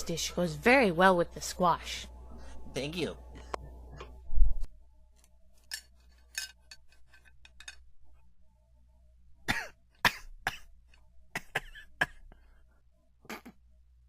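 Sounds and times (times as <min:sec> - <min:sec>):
cough-like throat sound: 0:09.5 - 0:10.7, 0:11.4 - 0:12.3, 0:13.2 - 0:13.6.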